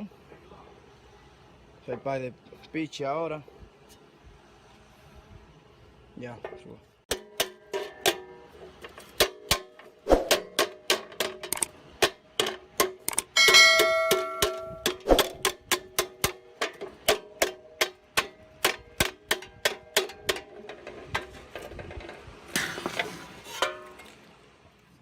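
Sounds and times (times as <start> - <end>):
hammer blows on sheet metal: 12.0 - 20.6.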